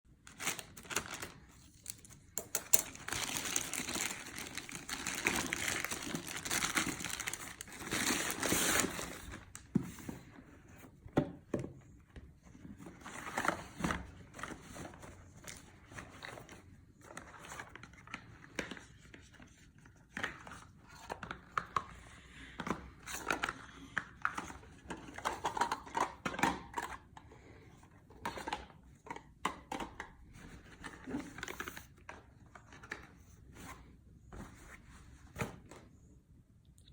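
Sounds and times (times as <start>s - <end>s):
packaging crinkling and tearing: 0.3s - 9.6s
clicks and rustles of unpacking: 0.3s - 10.4s.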